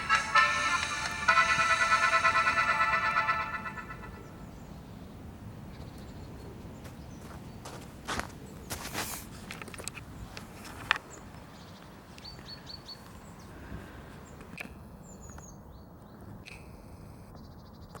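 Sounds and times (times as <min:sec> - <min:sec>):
small birds chirping: 0:04.1 - 0:08.9, 0:09.8 - 0:16.7, 0:17.3 - 0:18.0.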